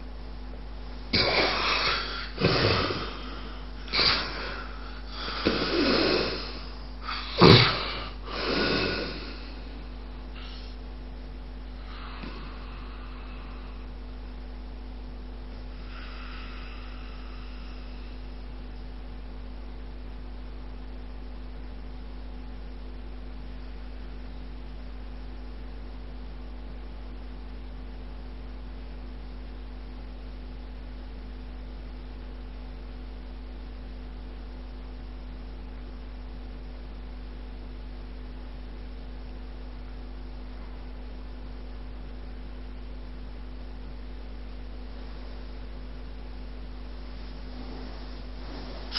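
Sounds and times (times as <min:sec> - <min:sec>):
electrical mains hum: 0:00.0 - 0:48.9
faint hiss: 0:00.9 - 0:20.8.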